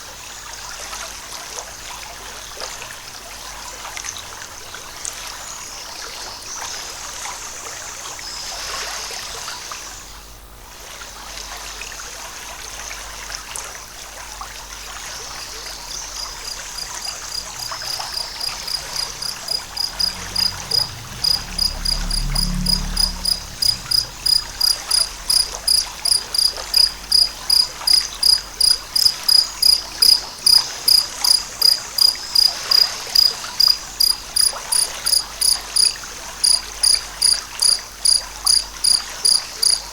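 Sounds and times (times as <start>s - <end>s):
forest stream rushing: 14.8s - 39.9s
insect chirping: 15.4s - 39.9s
low rumble: 15.7s - 30.5s.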